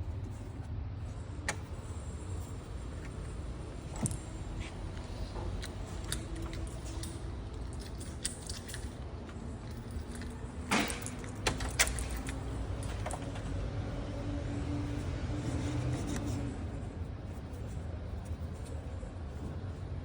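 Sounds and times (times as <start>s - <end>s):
metallic clicks and clatters: 1.4s - 13.6s.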